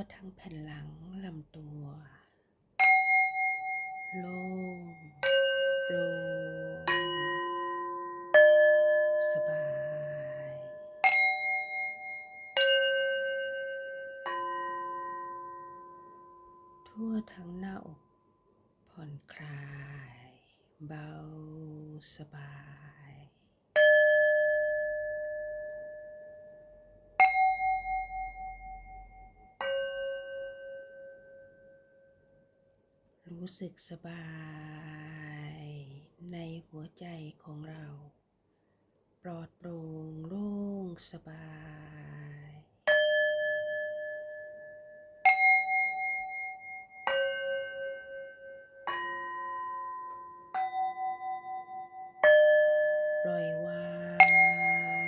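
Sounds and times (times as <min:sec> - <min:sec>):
singing bowls ringing: 0:02.8 - 0:17.2, 0:23.8 - 0:32.3, 0:42.9 - 0:55.0.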